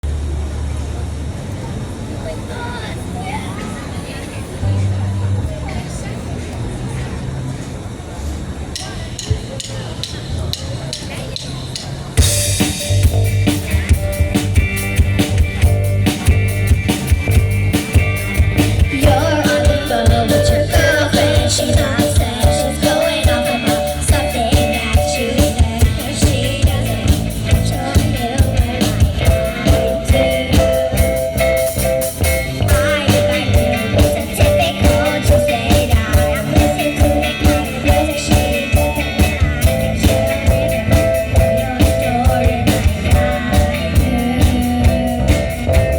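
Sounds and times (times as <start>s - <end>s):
drum kit steady beat: 8.8s - 45.9s
rock band playing live: 12.2s - 45.9s
person singing: 18.9s - 31.4s, 32.5s - 45.9s.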